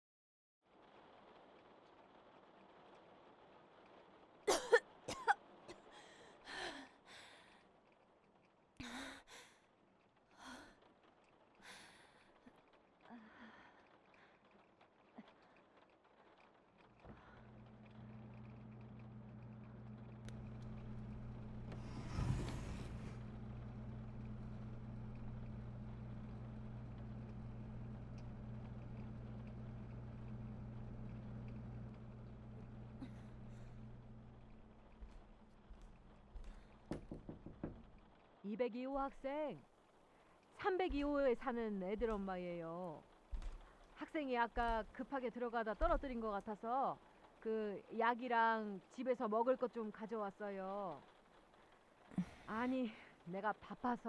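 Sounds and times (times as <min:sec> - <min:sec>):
low electrical hum: 0:00.7 - 0:54.0
person coughing harshly: 0:04.5 - 0:05.4
dull thump: 0:36.4 - 0:38.0.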